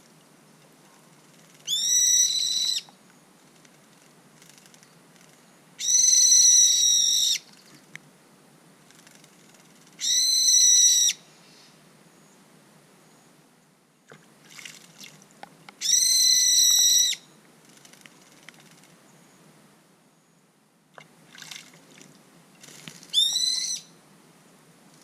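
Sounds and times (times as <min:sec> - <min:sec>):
bird calling: 0:01.6 - 0:03.0, 0:10.0 - 0:11.7, 0:15.8 - 0:17.3, 0:23.1 - 0:24.0
soft clicks and rustles: 0:17.6 - 0:19.0.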